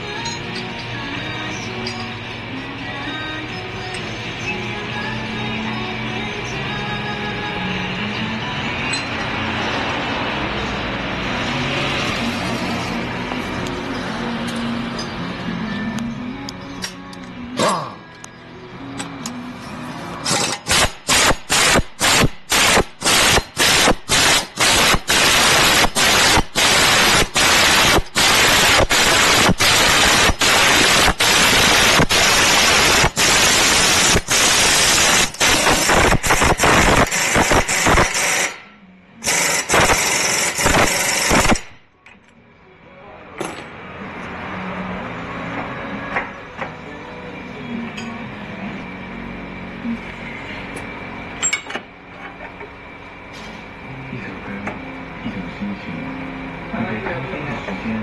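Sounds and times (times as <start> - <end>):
pneumatic tool hammering: 20.2 - 41.8.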